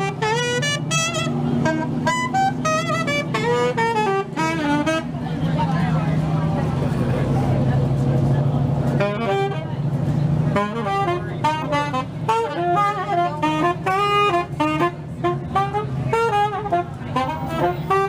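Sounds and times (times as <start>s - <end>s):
live blues band playing: 8.9s - 18.0s.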